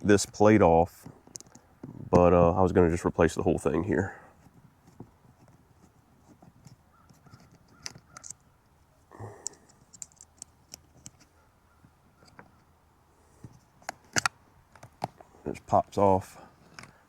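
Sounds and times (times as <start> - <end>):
faint clicks and taps of handling: 1.0 - 2.3.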